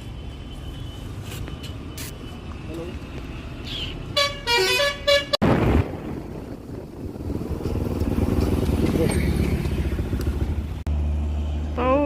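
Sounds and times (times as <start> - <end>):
vehicle engine rumble and road noise: 0.0 - 12.0
vehicle horn honking: 4.2 - 5.4.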